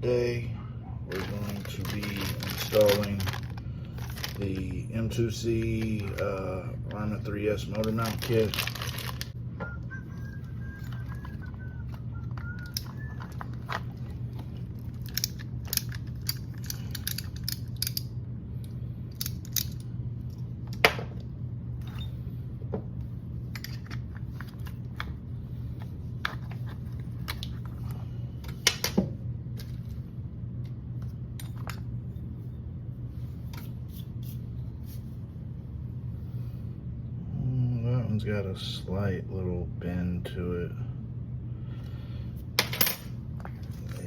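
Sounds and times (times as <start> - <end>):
steady low hum: 0.0 - 44.0
metal parts clicking and rattling: 1.1 - 4.7, 12.6 - 18.1, 19.1 - 20.9, 23.5 - 25.1.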